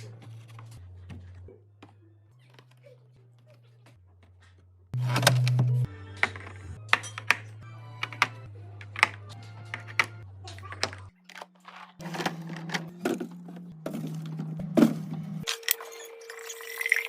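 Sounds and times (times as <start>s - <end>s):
background music: 5.0s - 11.1s.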